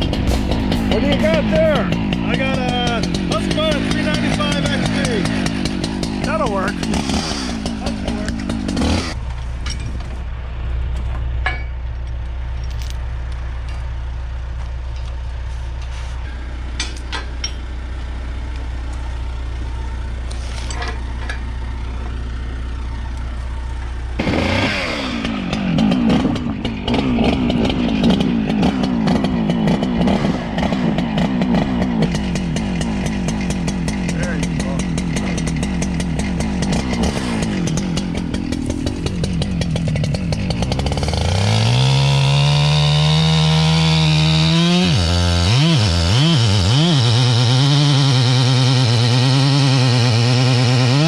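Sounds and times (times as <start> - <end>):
chainsaw idling and revving: 0.0 - 9.4, 17.9 - 51.0.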